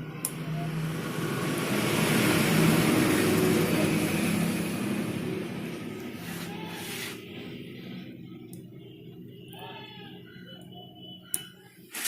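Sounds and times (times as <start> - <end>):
vehicle passing by: 0.0 - 8.3.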